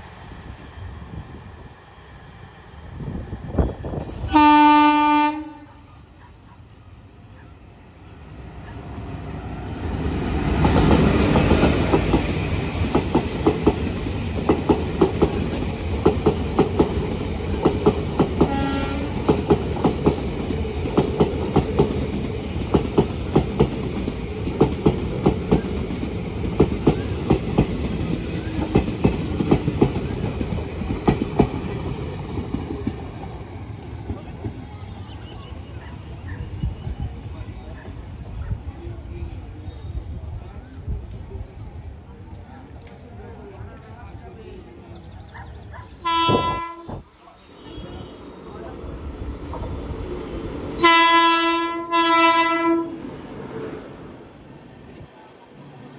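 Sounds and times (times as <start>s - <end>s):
train horn blast: 4.3s - 6.0s, 17.9s - 19.3s, 46.0s - 48.2s, 50.8s - 53.0s
train wheels clickety-clack: 9.9s - 39.0s.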